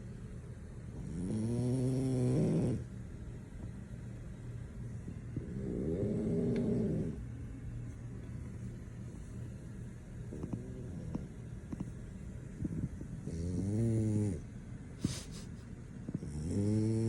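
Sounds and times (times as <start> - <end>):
dog snoring: 0.9 - 2.9, 5.4 - 7.2, 10.3 - 12.0, 12.6 - 17.0.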